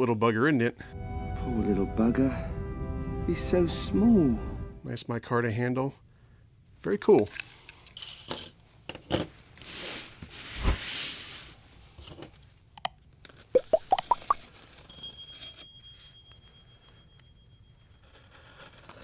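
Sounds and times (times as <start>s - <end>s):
cardboard scraping and handling: 9.2s - 12.4s, 18.2s - 19.0s.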